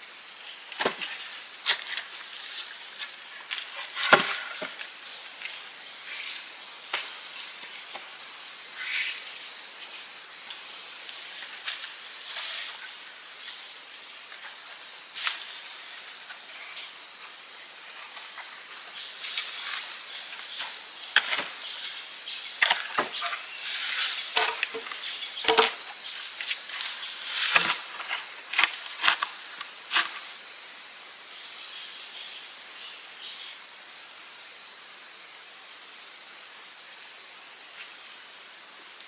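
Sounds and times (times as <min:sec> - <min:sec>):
high insect drone: 0:00.0 - 0:39.0
branches snapping and knocking: 0:00.8 - 0:04.9, 0:22.6 - 0:23.4, 0:24.0 - 0:29.3.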